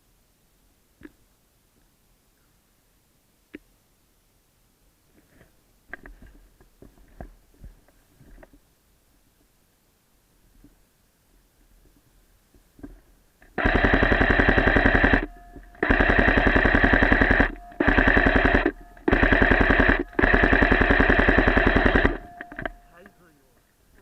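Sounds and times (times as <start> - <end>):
airsoft gun firing full-auto bursts: 13.6 - 22.9.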